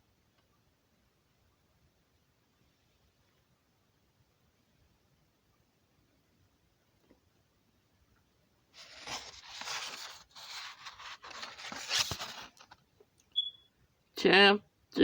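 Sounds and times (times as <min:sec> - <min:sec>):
rustling and scraping: 0:08.8 - 0:12.8
high beep: 0:13.4 - 0:13.7.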